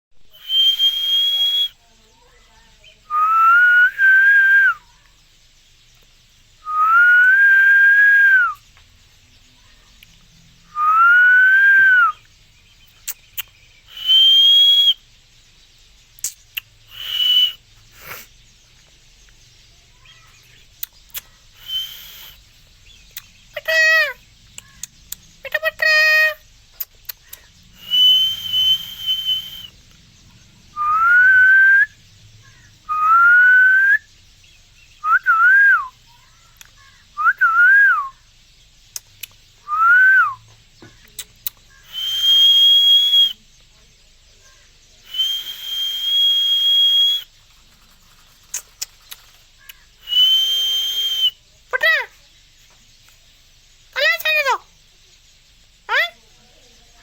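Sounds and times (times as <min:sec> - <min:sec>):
whistled notes: 0:00.2 - 0:01.8, 0:03.1 - 0:04.8, 0:06.6 - 0:08.6, 0:10.7 - 0:12.3, 0:13.0 - 0:15.0, 0:16.2 - 0:18.2, 0:20.8 - 0:24.0, 0:27.8 - 0:29.9, 0:30.7 - 0:32.0, 0:32.8 - 0:34.1, 0:35.0 - 0:36.0, 0:37.2 - 0:38.2, 0:39.2 - 0:40.4, 0:41.1 - 0:43.4, 0:45.0 - 0:47.4, 0:50.0 - 0:51.4.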